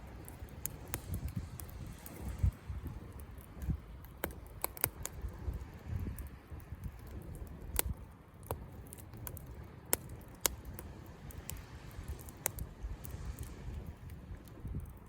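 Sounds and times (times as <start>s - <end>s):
campfire crackling and popping: 0.0s - 15.0s
waves breaking on shore: 10.8s - 14.4s.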